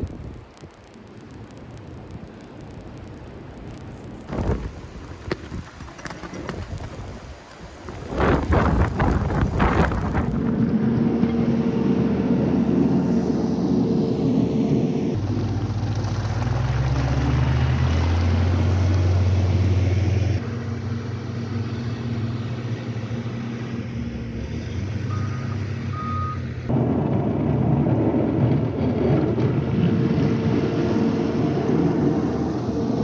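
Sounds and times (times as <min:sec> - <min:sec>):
rough wind-like noise: 0:00.0 - 0:20.5, 0:26.7 - 0:33.0
low engine drone: 0:09.2 - 0:33.0
short high beeps: 0:25.1 - 0:26.5.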